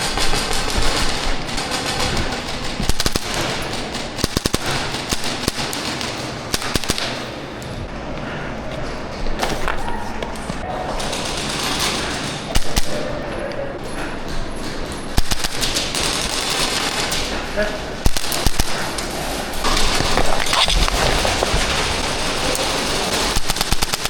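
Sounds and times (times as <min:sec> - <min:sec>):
airsoft guns firing: 0:00.0 - 0:07.6, 0:10.9 - 0:13.3, 0:15.1 - 0:24.0
steady background noise: 0:00.0 - 0:24.0.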